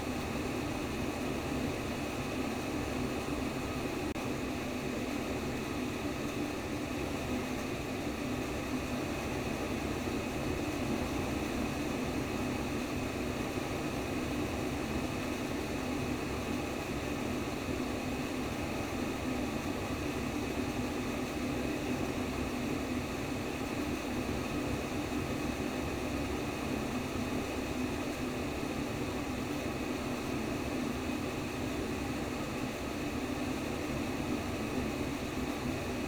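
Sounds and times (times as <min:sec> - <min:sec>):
white noise with low rushing hum: 0:07.4 - 0:36.0.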